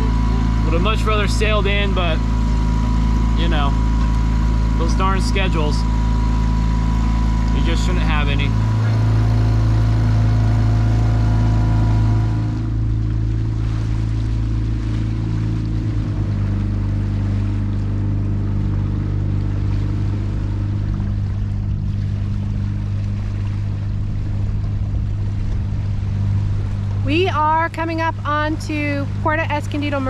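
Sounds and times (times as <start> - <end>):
outboard motor running: 0.0 - 30.0.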